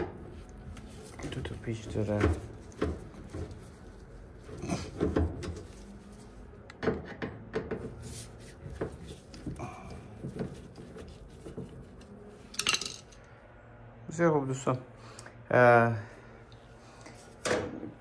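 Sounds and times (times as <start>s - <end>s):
tools clicking and knocking: 12.5s - 13.1s.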